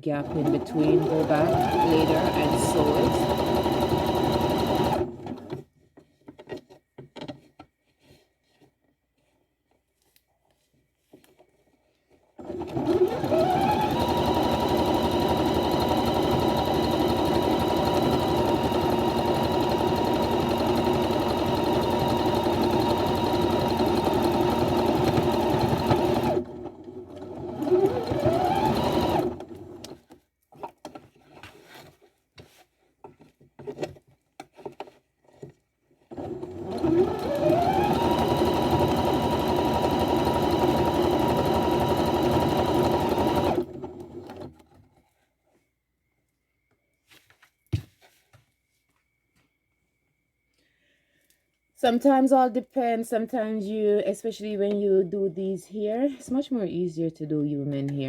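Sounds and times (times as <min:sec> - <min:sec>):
electric sewing machine running: 0:00.2 - 0:05.6, 0:12.4 - 0:30.0, 0:36.1 - 0:44.5.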